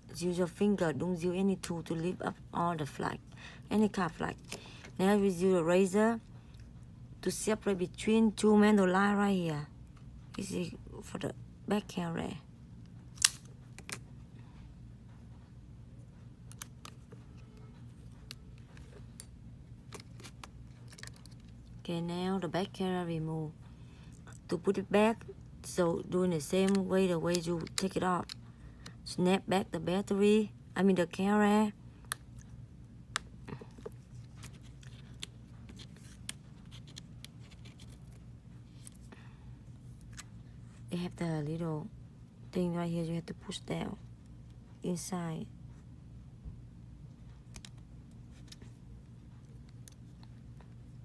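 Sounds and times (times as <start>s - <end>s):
faint low hum: 0.0s - 51.0s
small sharp clicks of parts: 13.2s - 14.0s.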